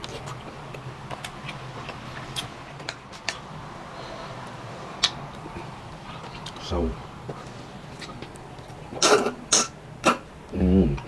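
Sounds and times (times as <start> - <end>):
eating clicks and smacks: 0.0 - 3.4, 5.0 - 5.6
steady low hum: 0.0 - 11.0.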